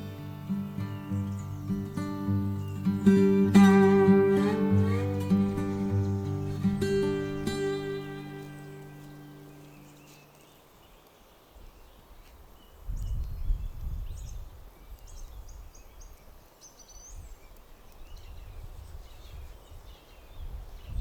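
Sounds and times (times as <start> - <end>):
bird chirps and trills: 0.0 - 10.3
wind rumble on microphone: 12.8 - 16.4, 17.1 - 21.0.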